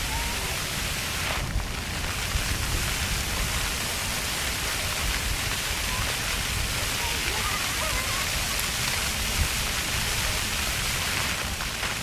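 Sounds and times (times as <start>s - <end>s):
fountain water spraying: 0.0s - 12.0s.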